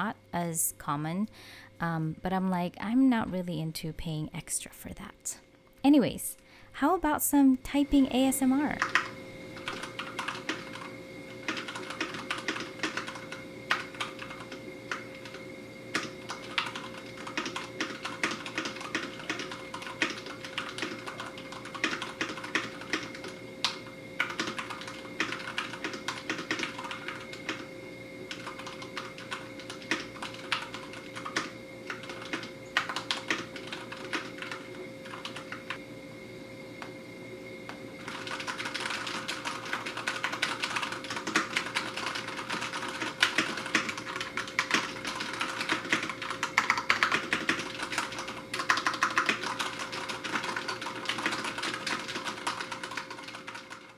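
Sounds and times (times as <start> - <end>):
typing on mechanical keyboard: 8.8 - 27.7, 28.3 - 35.8, 38.0 - 53.9.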